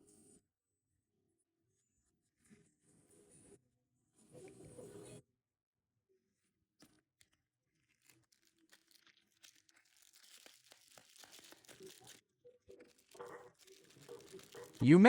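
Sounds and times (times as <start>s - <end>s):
wrapper tearing and crinkling: 6.9s - 14.8s.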